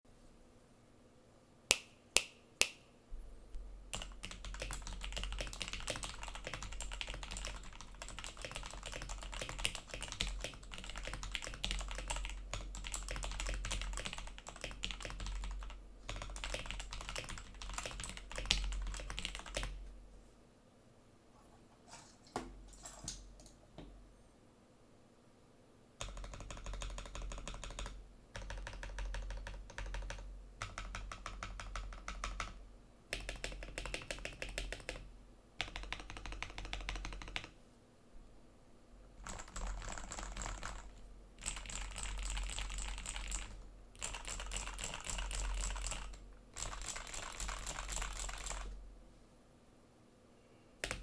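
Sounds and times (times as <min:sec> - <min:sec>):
mechanical keyboard typing: 0:03.9 - 0:19.8, 0:26.0 - 0:35.0, 0:35.6 - 0:37.5, 0:39.2 - 0:48.8.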